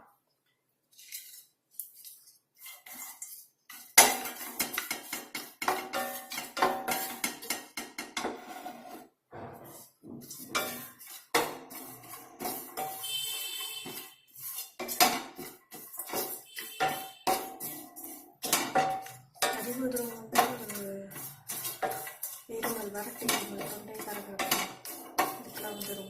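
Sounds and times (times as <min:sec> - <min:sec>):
metal spatula scraping in a pan: 0:00.9 - 0:26.0.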